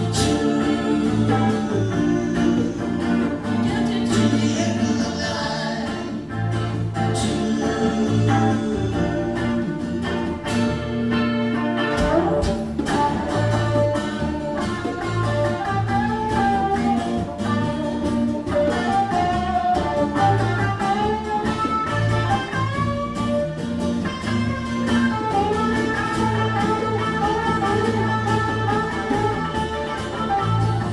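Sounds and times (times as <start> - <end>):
bass guitar: 0.0 - 30.9
lead guitar with bent notes: 0.0 - 30.9
rhythm guitar: 0.0 - 30.9
steady percussion beat: 11.9 - 30.9.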